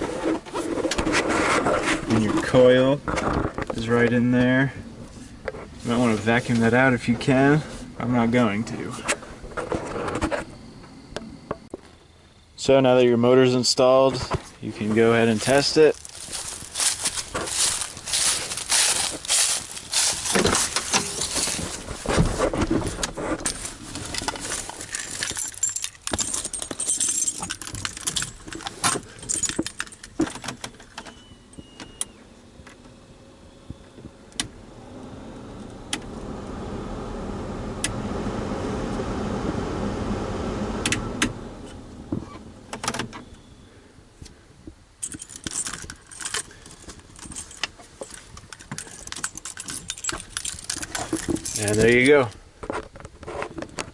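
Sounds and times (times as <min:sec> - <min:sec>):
keys jangling: 0:16.0 - 0:21.8, 0:23.4 - 0:31.0, 0:45.0 - 0:52.0
clicks and rattles: 0:22.6 - 0:31.2, 0:45.0 - 0:53.9
blower motor rushing air: 0:32.4 - 0:44.0.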